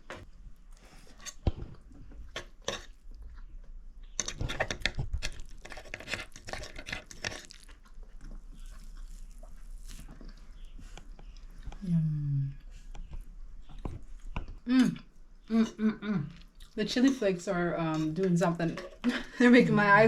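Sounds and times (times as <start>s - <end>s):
person chewing and crunching: 0.8s - 11.8s.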